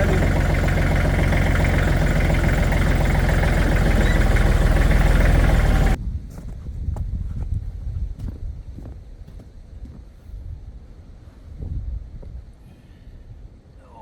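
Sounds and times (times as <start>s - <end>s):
tractor engine idling: 0.0s - 6.0s
wind noise: 5.8s - 12.6s.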